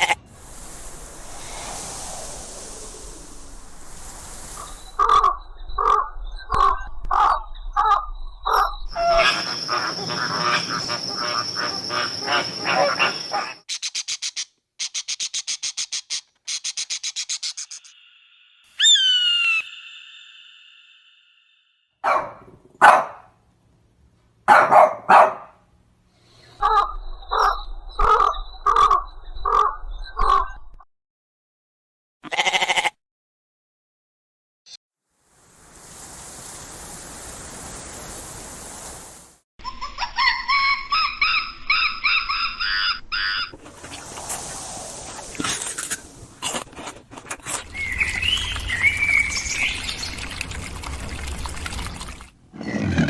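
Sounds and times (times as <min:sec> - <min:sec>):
harsh animal calls: 0:05.0 - 0:14.2
high-pitched whine: 0:08.9 - 0:13.6
rapid chatter of calls: 0:09.0 - 0:17.9.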